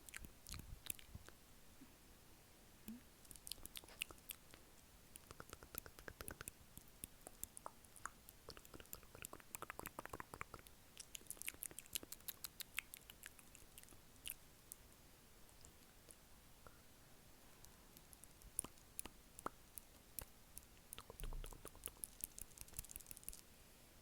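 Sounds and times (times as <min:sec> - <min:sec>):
wet mouth clicks and smacks: 0:00.0 - 0:01.4, 0:02.9 - 0:14.8, 0:17.6 - 0:23.4.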